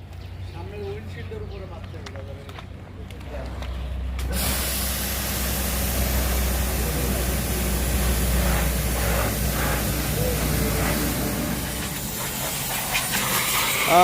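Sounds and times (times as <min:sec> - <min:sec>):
loud even hiss: 0:04.2 - 0:14.0
machine humming: 0:04.3 - 0:13.0.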